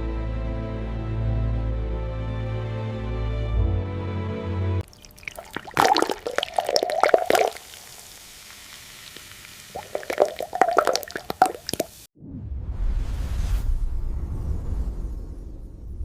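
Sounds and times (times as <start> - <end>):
wet squishing and plopping: 4.8 - 12.0.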